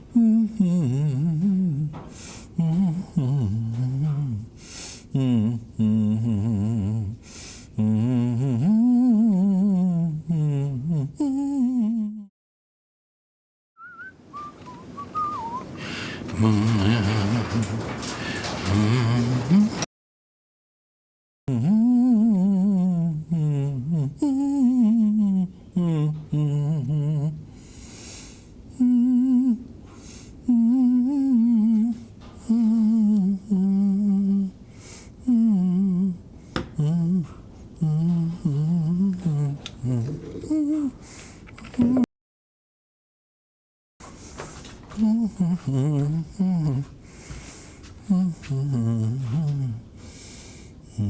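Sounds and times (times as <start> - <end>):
background hiss: 0.0 - 8.8, 14.3 - 19.8, 25.4 - 41.8, 44.0 - 51.0
person humming: 0.0 - 12.3, 16.3 - 19.9, 21.5 - 27.6, 28.7 - 29.7, 30.4 - 42.1, 44.9 - 47.0, 48.0 - 49.9
person whistling: 13.8 - 15.7.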